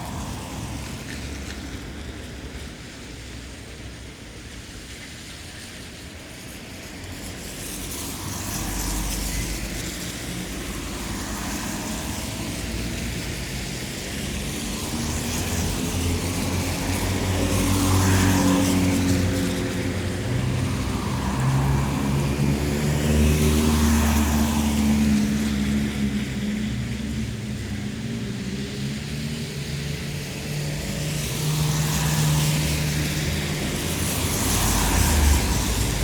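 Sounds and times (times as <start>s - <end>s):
tyres hissing on wet asphalt: 0.0s - 36.0s
car engine hum passing: 14.8s - 36.0s.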